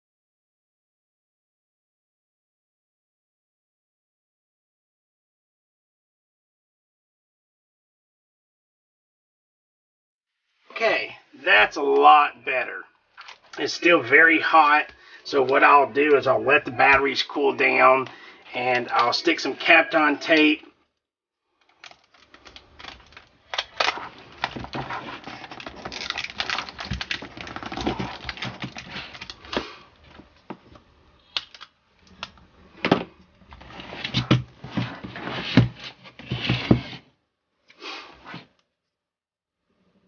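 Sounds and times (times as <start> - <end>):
rustling and crinkling: 21.6 - 37.1.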